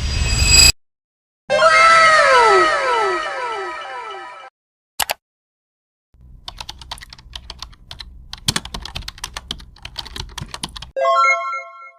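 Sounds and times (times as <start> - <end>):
keyboard key clicks: 5.0 - 5.2, 6.5 - 10.9.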